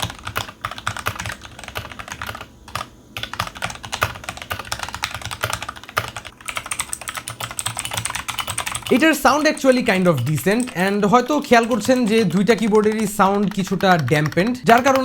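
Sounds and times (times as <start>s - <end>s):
mechanical keyboard typing: 0.0s - 15.0s.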